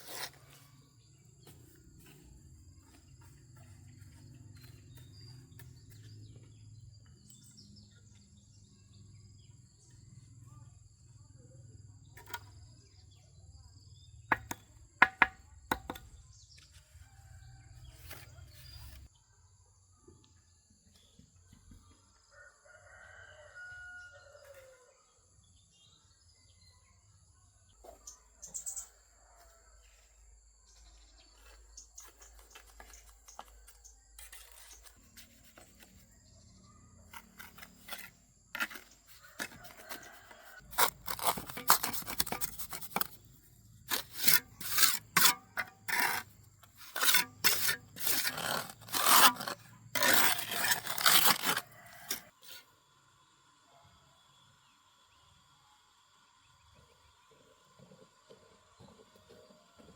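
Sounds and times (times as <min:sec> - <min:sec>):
rapid hand scraping strokes: 0:43.9 - 0:52.3.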